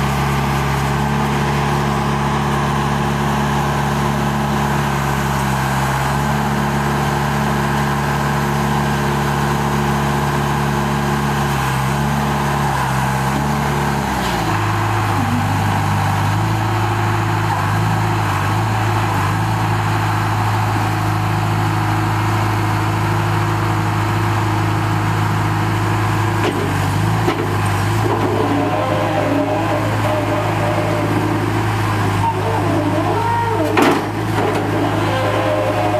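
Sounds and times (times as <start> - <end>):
diesel engine running: 0.0 - 35.9.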